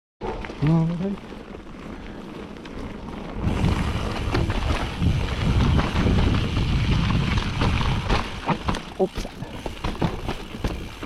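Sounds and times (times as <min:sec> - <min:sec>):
bike tyres rolling on rough trail: 0:00.2 - 0:11.0
wind buffeting microphone: 0:01.6 - 0:11.0
bike knocks and rattles: 0:02.7 - 0:11.0.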